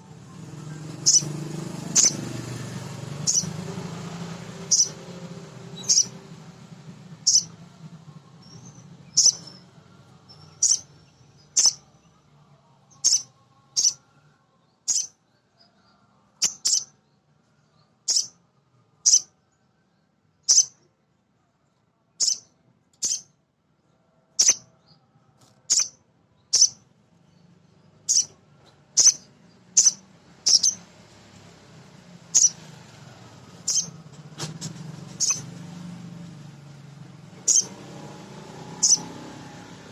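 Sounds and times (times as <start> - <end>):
bird chirping: 0.3 - 6.3, 7.2 - 7.6, 8.4 - 14.2, 14.8 - 18.4, 19.0 - 19.3, 20.4 - 20.9, 22.2 - 23.4, 24.4 - 30.9, 32.3 - 32.7, 33.6 - 34.0, 35.2 - 35.6, 37.4 - 39.8.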